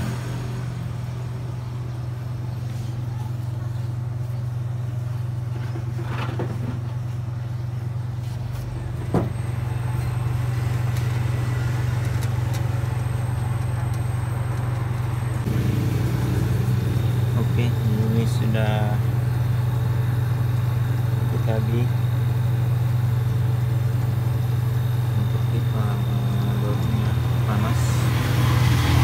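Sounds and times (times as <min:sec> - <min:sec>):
refrigeration compressor humming: 0:00.0 - 0:29.0.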